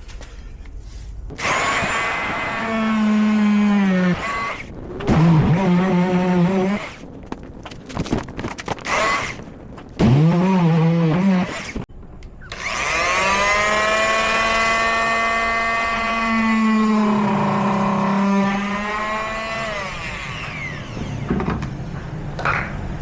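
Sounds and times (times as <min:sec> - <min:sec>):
power tool cutting plastic: 0:01.3 - 0:07.1, 0:08.8 - 0:11.9, 0:12.5 - 0:21.6.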